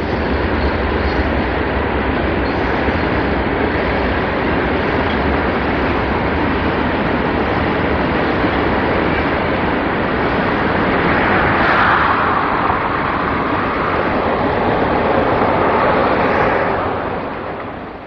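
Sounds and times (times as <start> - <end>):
wind rushing: 6.7 - 18.0
bicycle road noise: 7.4 - 18.0.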